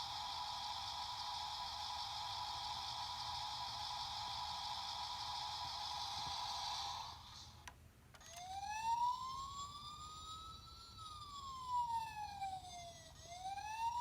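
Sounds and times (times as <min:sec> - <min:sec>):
siren wailing: 0:08.2 - 0:14.0.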